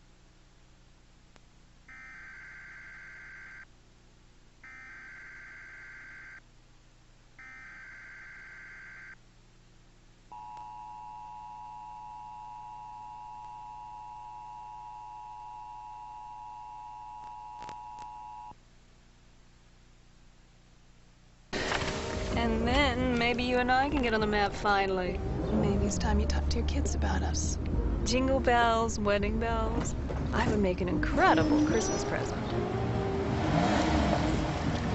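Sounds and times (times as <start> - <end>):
low mains hum: 0.0 - 32.6
shrill warbling data tone: 4.7 - 6.4, 7.4 - 9.2, 31.1 - 32.6.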